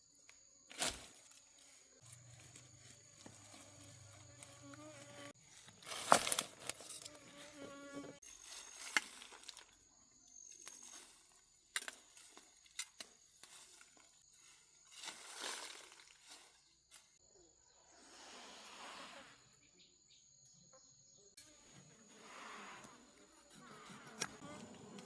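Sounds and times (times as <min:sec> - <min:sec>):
high insect tone: 0:00.0 - 0:05.7.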